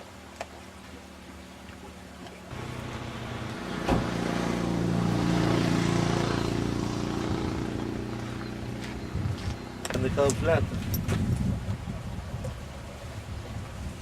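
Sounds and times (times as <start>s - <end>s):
car engine droning inside car: 2.5s - 9.6s.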